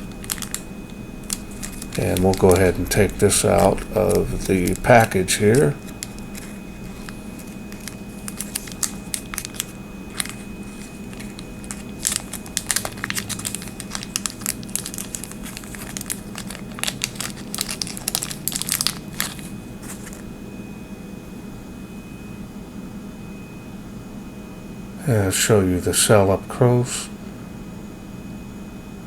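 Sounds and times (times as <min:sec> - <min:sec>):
packaging crinkling: 0:00.0 - 0:20.3.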